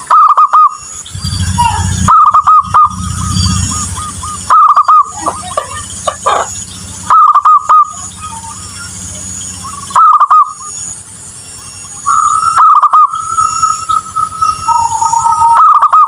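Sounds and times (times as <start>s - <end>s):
steady high note: 1.1s - 6.6s
dove cooing: 1.4s - 8.8s, 14.4s - 16.0s.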